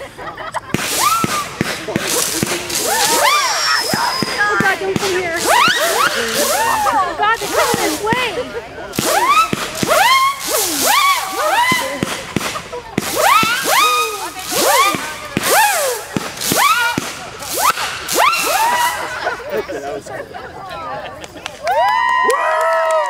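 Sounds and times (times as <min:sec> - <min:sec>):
firework pops: 0:00.7 - 0:19.0
firework whistles: 0:00.7 - 0:19.5.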